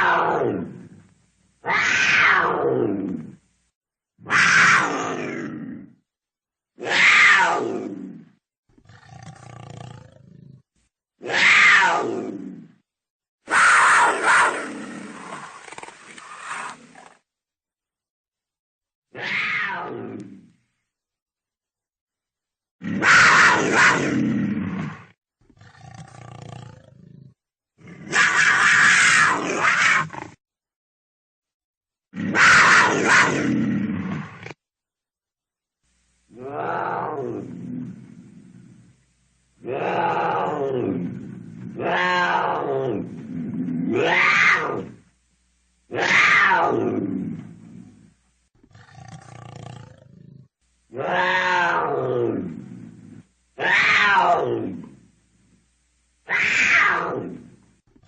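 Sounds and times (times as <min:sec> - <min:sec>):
quieter lower animal sound: 0:00.0 - 0:06.0, 0:06.8 - 0:12.8, 0:13.4 - 0:17.3, 0:35.9 - 0:58.0
cougar calling harshly: 0:01.6 - 0:02.8, 0:04.2 - 0:05.4, 0:06.8 - 0:07.8, 0:11.2 - 0:12.3, 0:13.5 - 0:17.1, 0:19.1 - 0:20.0, 0:22.9 - 0:24.2, 0:28.0 - 0:30.3, 0:32.2 - 0:33.6, 0:41.8 - 0:43.1, 0:43.9 - 0:45.0, 0:45.9 - 0:47.0, 0:50.9 - 0:52.5, 0:53.6 - 0:54.6, 0:56.3 - 0:57.4
cougar calling: 0:13.5 - 0:17.1, 0:50.9 - 0:54.6.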